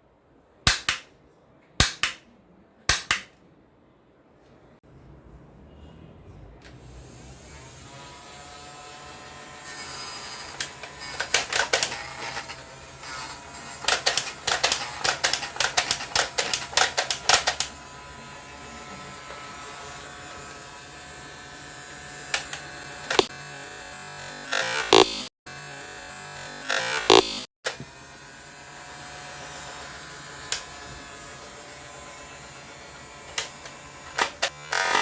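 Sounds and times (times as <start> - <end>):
toy gun clicking: 0.7 - 1.1, 1.8 - 2.2, 10.6 - 12.5, 13.8 - 17.7, 22.4 - 23.3, 33.3 - 35.0.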